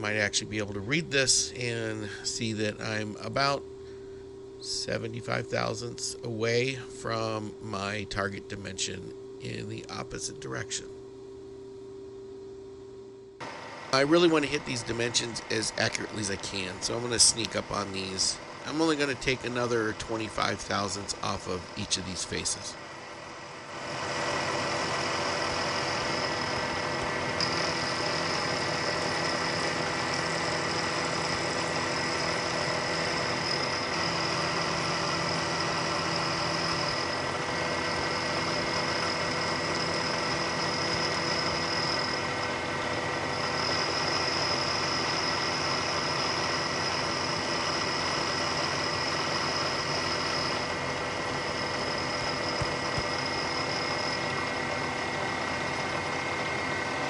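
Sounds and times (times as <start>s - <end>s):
high whine of cutting: 0.0s - 57.0s
milling machine motor running: 13.4s - 57.0s.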